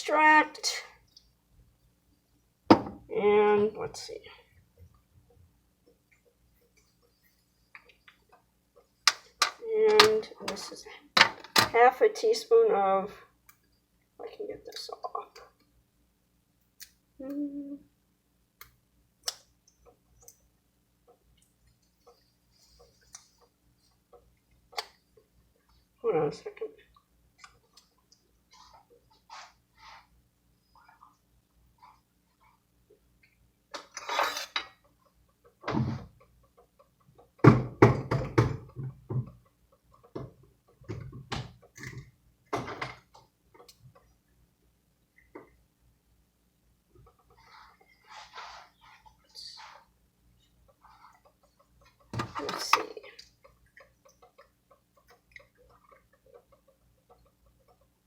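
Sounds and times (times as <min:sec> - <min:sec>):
person humming: 0:17.2 - 0:17.8
kitchen utensils clattering: 0:33.9 - 0:34.8.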